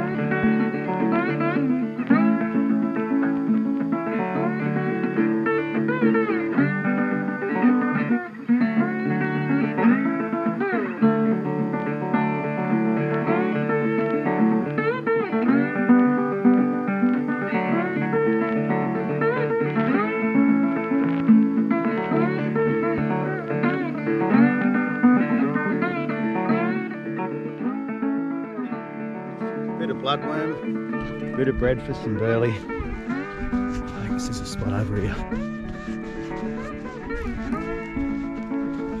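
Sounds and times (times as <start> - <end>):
bluesy plucked guitar: 0.0 - 39.0.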